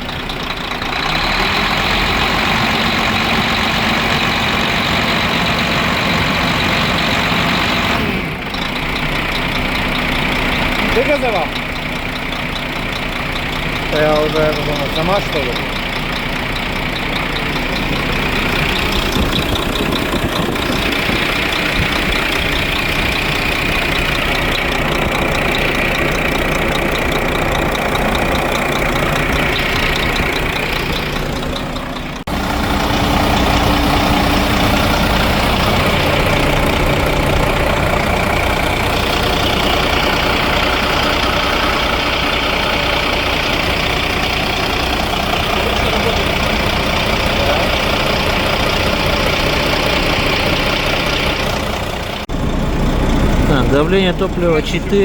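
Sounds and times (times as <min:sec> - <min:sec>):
diesel truck engine idling: 0:00.0 - 0:55.0.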